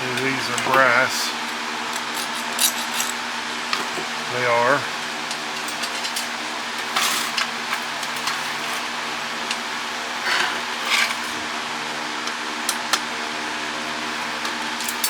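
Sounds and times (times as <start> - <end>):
steady background hum: 0.0 - 15.0
scrapes and clicks of parts: 0.1 - 3.2, 5.3 - 8.9, 10.2 - 11.4.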